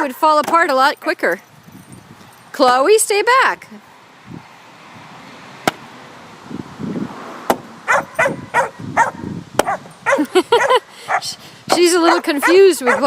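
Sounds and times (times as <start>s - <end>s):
sledgehammer strikes: 5.6s - 5.8s
puppy yipping: 7.9s - 11.3s, 12.1s - 13.0s.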